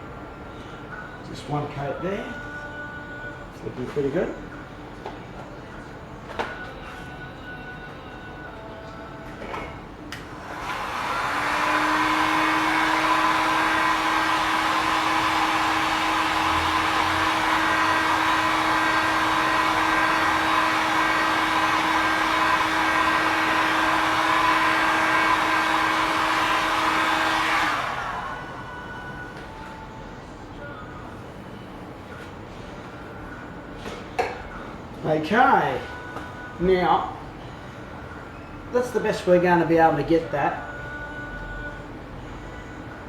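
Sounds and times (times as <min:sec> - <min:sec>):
hot-air blower humming: 0:03.7 - 0:39.4
blower switch: 0:10.1 - 0:29.5.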